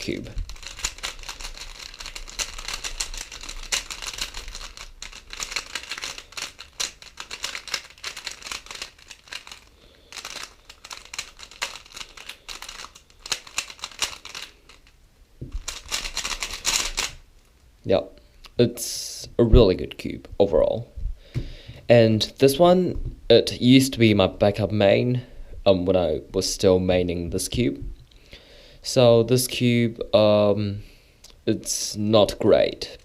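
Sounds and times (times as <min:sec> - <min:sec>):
plastic puzzle cube clicking: 0:00.5 - 0:14.9, 0:15.5 - 0:17.2.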